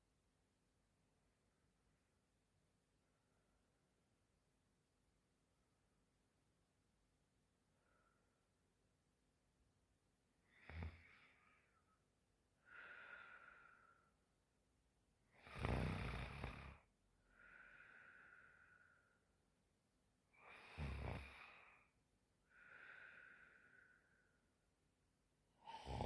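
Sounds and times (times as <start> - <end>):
woman snoring: 10.5 - 11.4, 15.4 - 16.8, 20.4 - 21.7, 25.6 - 26.0
soft breath: 12.6 - 14.2, 17.2 - 19.3, 20.4 - 24.5.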